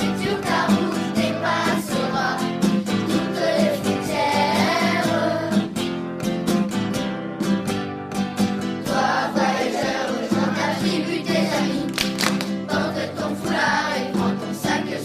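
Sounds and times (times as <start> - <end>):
group singing over instruments: 0.0 - 5.7, 8.8 - 12.0, 12.6 - 15.0.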